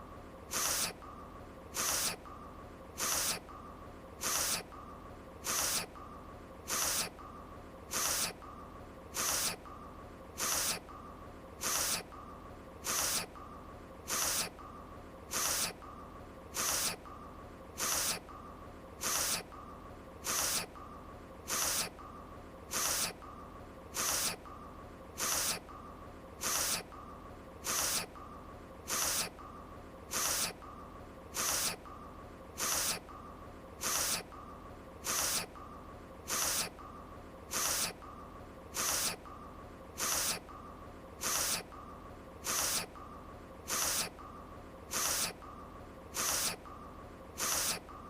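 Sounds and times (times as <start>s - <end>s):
faint steady background tone: 0.0s - 48.0s
sniffle through the nose: 0.5s - 1.0s, 1.7s - 2.2s, 3.0s - 3.5s, 4.2s - 4.7s, 5.4s - 6.0s, 6.7s - 7.2s, 7.9s - 8.4s, 9.1s - 9.6s, 10.4s - 10.9s, 11.6s - 12.1s, 12.8s - 13.4s, 14.1s - 14.6s, 15.3s - 15.8s, 16.5s - 17.0s, 17.8s - 18.3s, 19.0s - 19.5s, 20.2s - 20.8s, 21.5s - 22.0s, 22.7s - 23.2s, 23.9s - 24.4s, 25.2s - 25.7s, 26.4s - 26.9s, 27.6s - 28.2s, 28.9s - 29.4s, 30.1s - 30.6s, 31.3s - 31.8s, 32.6s - 33.1s, 33.8s - 34.3s, 35.0s - 35.6s, 36.3s - 36.8s, 37.5s - 38.0s, 38.7s - 39.2s, 40.0s - 40.5s, 41.2s - 41.7s, 42.4s - 43.0s, 43.7s - 44.2s, 44.9s - 45.4s, 46.1s - 46.6s, 47.4s - 47.9s.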